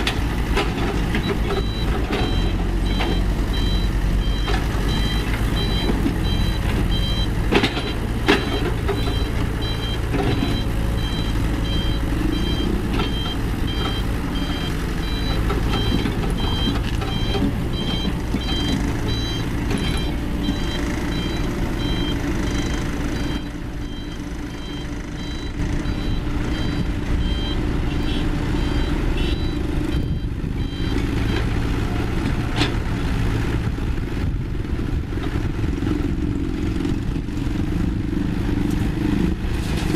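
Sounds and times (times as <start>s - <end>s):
diesel engine running: 0.0s - 39.9s
reversing alarm beeping: 1.2s - 31.6s.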